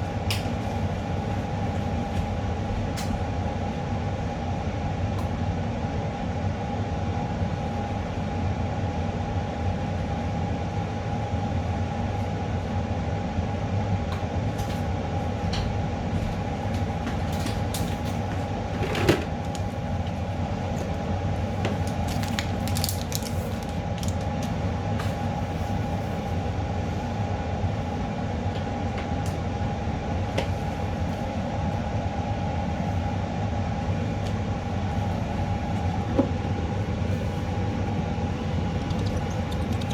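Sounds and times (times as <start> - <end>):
small clicks and ticks: 38.8 - 39.9.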